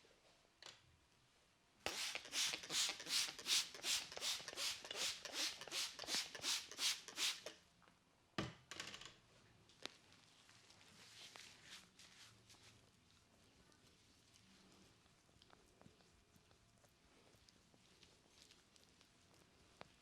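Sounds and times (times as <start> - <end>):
hands rubbing hair and scalp: 1.9 - 7.5, 10.7 - 13.1.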